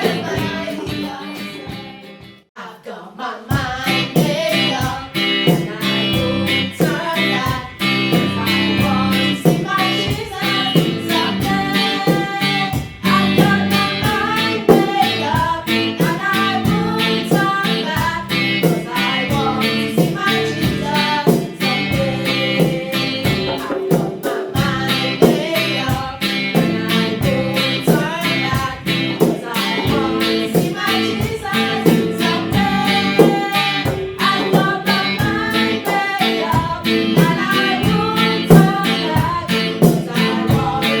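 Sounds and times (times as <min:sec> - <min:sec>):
singing over guitar: 0:00.0 - 0:41.0.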